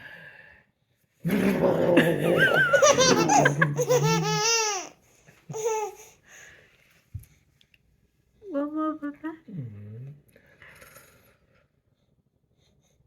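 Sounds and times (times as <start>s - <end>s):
young child laughing: 2.4s - 4.9s, 5.5s - 6.0s.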